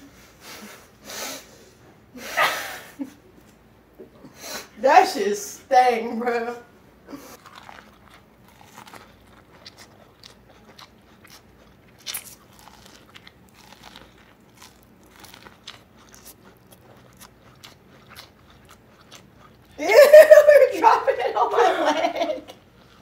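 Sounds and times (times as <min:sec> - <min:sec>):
chewing corn on the cob: 0:07.2 - 0:19.8, 0:22.4 - 0:23.0.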